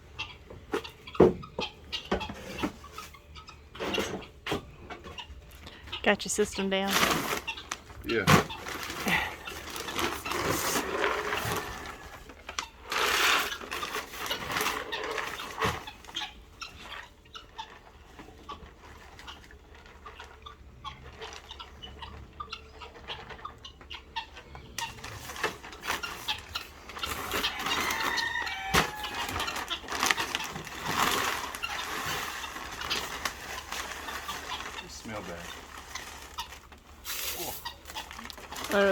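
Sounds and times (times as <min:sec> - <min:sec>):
chickens clucking: 0:00.0 - 0:38.9
feed scooped into buckets: 0:37.0 - 0:37.6.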